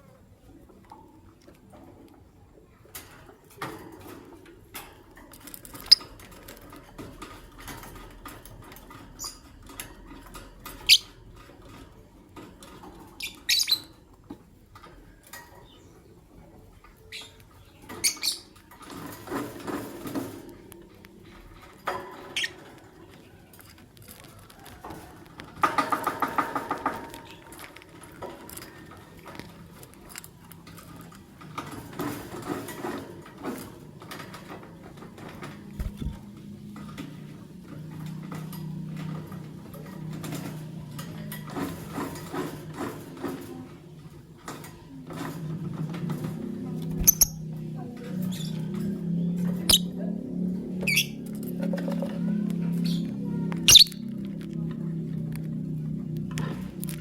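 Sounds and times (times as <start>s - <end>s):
buzzy bird chatter: 13.0s - 14.1s, 16.9s - 20.3s, 46.7s - 50.0s, 50.7s - 54.4s
lovebirds chirping: 46.9s - 47.4s, 49.2s - 49.9s, 53.7s - 54.0s.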